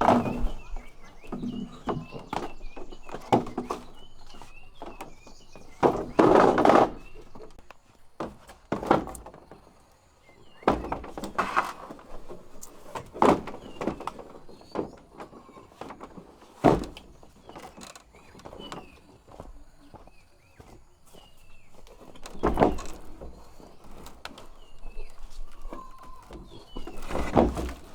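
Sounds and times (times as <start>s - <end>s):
small birds chirping: 0.0s - 8.0s, 9.4s - 11.4s, 12.2s - 27.9s
knocks and thuds: 10.6s - 11.6s, 16.6s - 17.8s, 22.2s - 24.0s, 25.8s - 27.9s.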